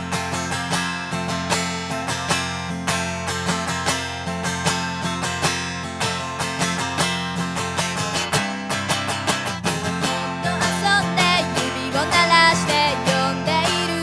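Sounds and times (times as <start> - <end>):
guitar strumming chords: 0.0 - 14.0.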